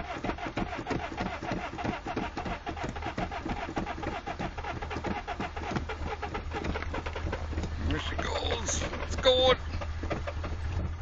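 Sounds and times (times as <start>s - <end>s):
engine cranking by starter: 0.0s - 11.0s.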